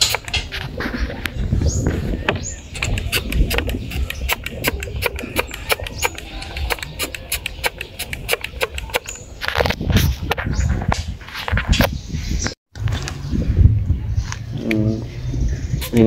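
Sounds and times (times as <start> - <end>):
sharp clicks and scratches: 0.0 - 12.6.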